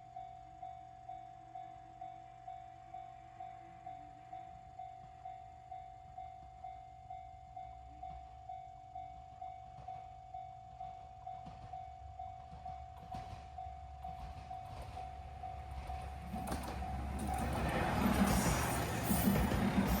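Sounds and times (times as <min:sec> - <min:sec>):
train rumble: 0:10.8 - 0:20.0.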